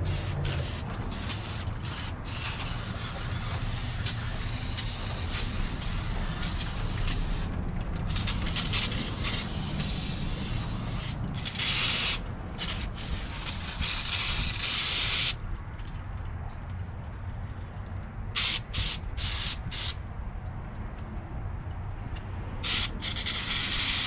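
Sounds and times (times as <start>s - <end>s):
spray hissing in bursts: 0.0s - 7.5s, 8.1s - 15.4s, 18.4s - 20.0s, 22.6s - 24.0s
steady low rumble: 0.0s - 24.0s.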